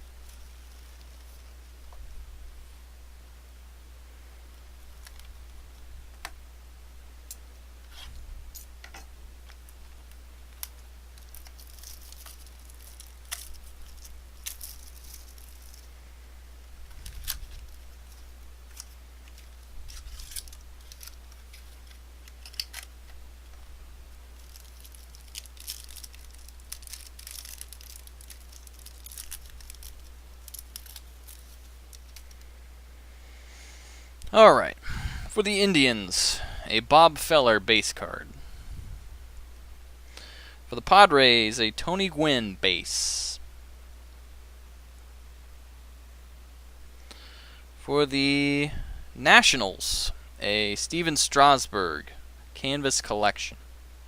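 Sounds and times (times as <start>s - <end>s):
steady low hum: 0.0s - 54.0s
wrappers tearing and crinkling: 10.6s - 15.9s, 16.8s - 22.9s, 24.3s - 32.5s.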